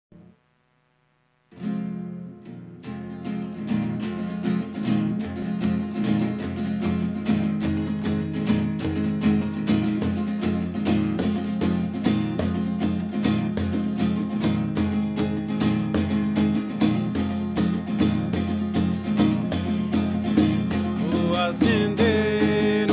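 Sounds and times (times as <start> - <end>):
acoustic guitar strumming: 1.5 - 22.9.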